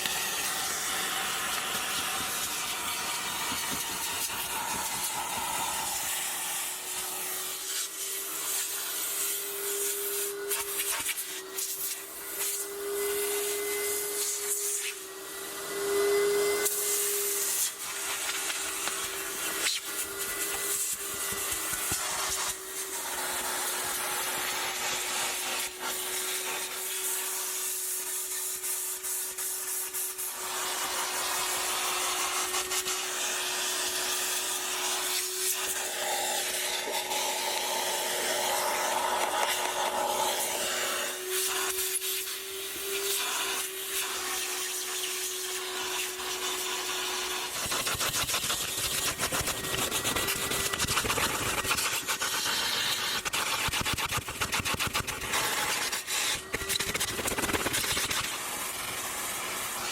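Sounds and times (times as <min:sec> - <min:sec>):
small motor whine: 0:00.0 - 0:29.3, 0:30.0 - 0:59.9
rubbing and scrubbing: 0:47.5 - 0:58.3
fast scratching: 0:47.6 - 0:55.5.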